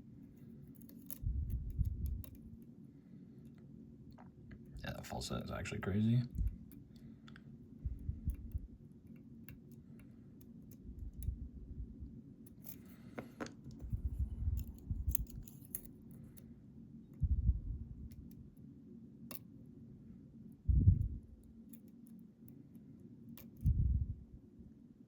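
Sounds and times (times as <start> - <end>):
lock pick clicking and scraping: 0.4 - 2.5, 12.5 - 16.5, 21.6 - 22.6, 23.4 - 23.7.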